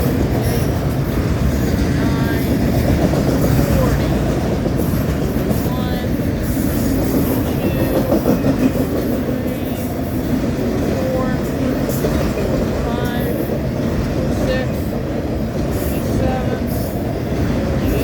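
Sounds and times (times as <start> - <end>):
train wheels rumbling on rails: 0.0 - 18.0.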